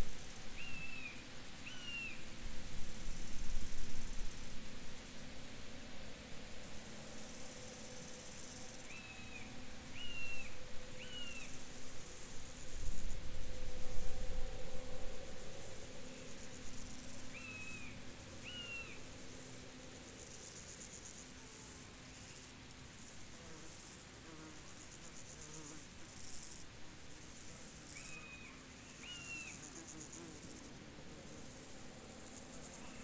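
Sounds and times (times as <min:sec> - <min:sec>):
insects chirring trill: 0:07.2 - 0:33.0.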